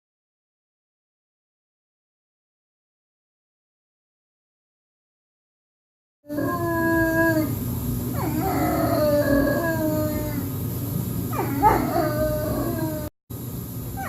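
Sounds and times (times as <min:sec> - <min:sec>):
dog howling: 0:06.3 - 0:10.6, 0:11.3 - 0:13.1.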